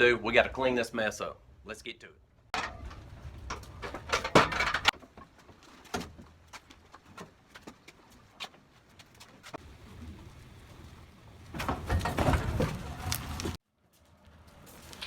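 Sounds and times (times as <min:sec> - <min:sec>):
tools and wood clattering: 0:02.5 - 0:09.6, 0:11.4 - 0:13.6.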